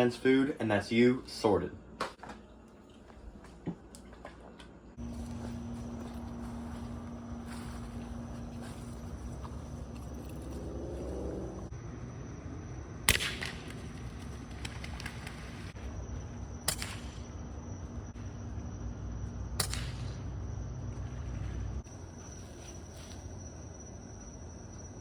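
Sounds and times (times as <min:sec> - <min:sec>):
low steady rumble: 0:04.9 - 0:25.0
air rifle shots: 0:13.0 - 0:15.7, 0:16.6 - 0:17.6, 0:19.5 - 0:20.4.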